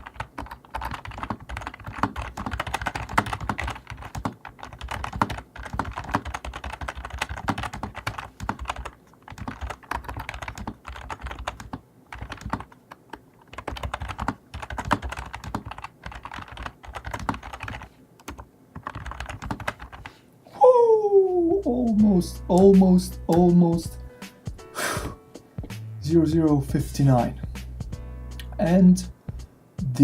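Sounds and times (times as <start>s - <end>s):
keyboard keys clicking: 0.0s - 20.1s.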